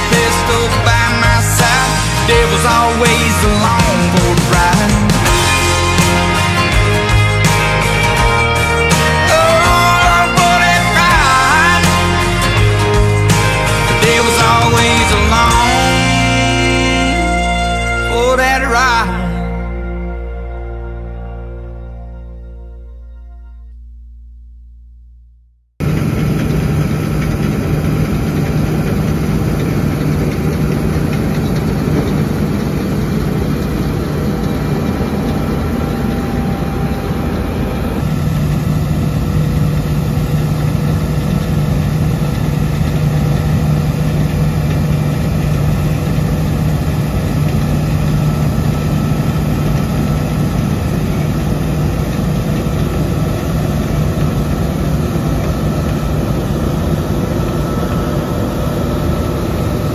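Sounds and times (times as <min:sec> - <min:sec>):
diesel engine deep hum: 0:00.0 - 0:59.9.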